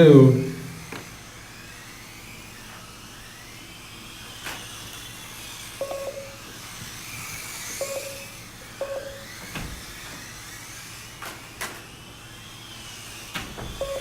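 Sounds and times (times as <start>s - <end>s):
rc car motors whining: 0.0s - 14.0s
short electronic beeps: 5.8s - 6.5s, 7.8s - 9.3s, 13.8s - 14.0s.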